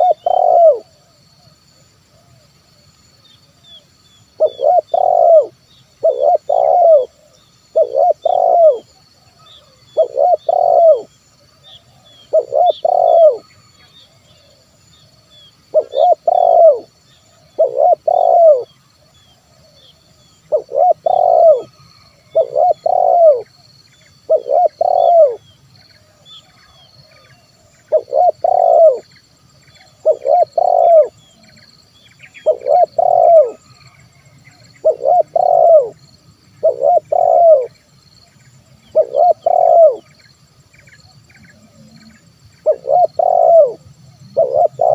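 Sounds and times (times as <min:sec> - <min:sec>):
dove cooing: 0:00.0 - 0:01.1, 0:04.4 - 0:14.6, 0:15.7 - 0:18.8, 0:19.4 - 0:23.6, 0:24.2 - 0:25.4, 0:27.2 - 0:29.1, 0:29.9 - 0:31.6, 0:32.3 - 0:36.0, 0:36.6 - 0:37.8, 0:38.8 - 0:40.2, 0:41.1 - 0:44.9
small birds chirping: 0:00.0 - 0:02.5, 0:03.2 - 0:44.9
steady high hiss: 0:00.0 - 0:44.9.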